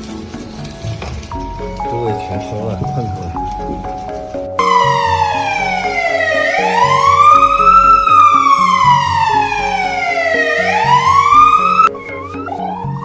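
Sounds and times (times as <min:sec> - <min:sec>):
background music: 0:00.0 - 0:13.0
emergency siren wailing: 0:04.6 - 0:13.0.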